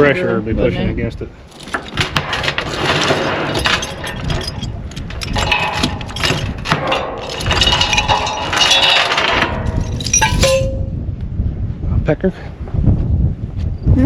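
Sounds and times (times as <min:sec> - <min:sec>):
hammer clanking on steel: 0:01.5 - 0:10.9.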